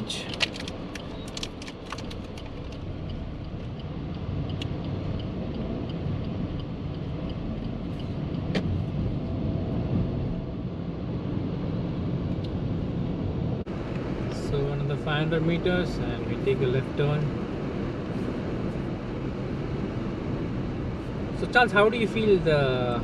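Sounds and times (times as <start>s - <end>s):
car engine and tyre rumble: 0.0s - 23.0s
faint regular ticking: 0.3s - 8.5s.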